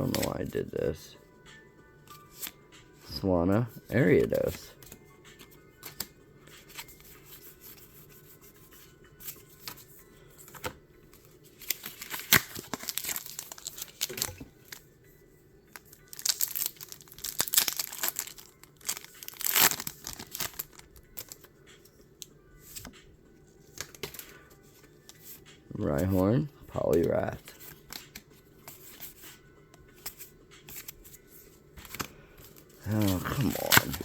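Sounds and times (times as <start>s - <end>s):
foil wrappers tearing and crinkling: 11.6s - 14.4s, 15.8s - 21.4s, 32.8s - 34.0s.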